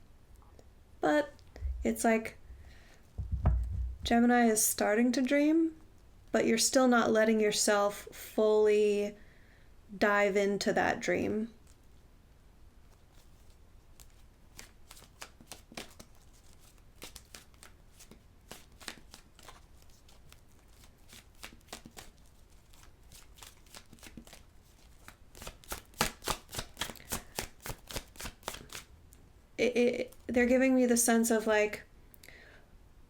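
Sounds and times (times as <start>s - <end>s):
cards being shuffled: 12.9s - 28.9s.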